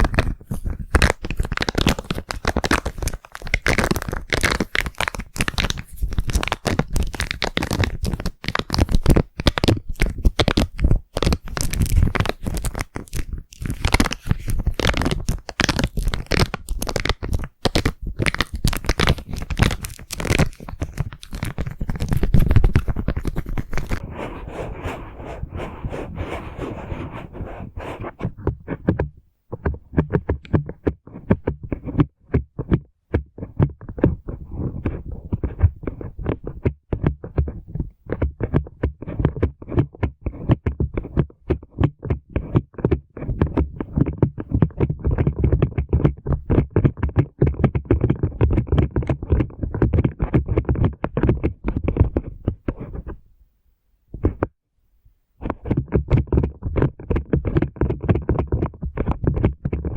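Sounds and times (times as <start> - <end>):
brush rubbing on microphone: 18.4 - 28.9.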